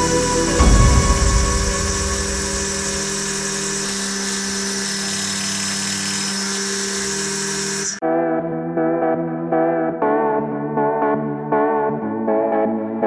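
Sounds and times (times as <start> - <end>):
low rumble: 0.0 - 3.9
spindle motor whining: 0.0 - 8.0.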